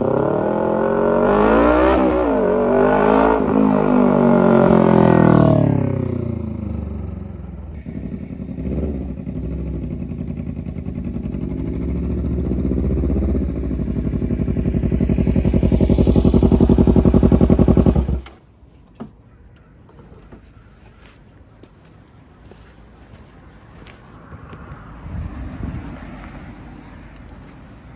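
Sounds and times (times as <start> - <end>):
motorcycle engine exhaust note: 0.0 - 18.3.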